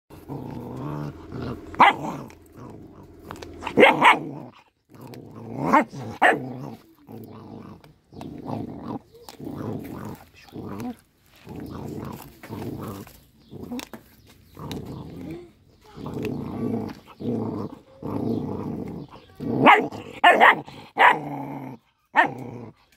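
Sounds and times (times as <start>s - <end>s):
small dog growling: 0.1s - 22.9s
dog barking: 1.8s - 2.3s, 3.6s - 4.5s, 5.7s - 6.7s, 19.6s - 21.3s, 22.2s - 22.4s.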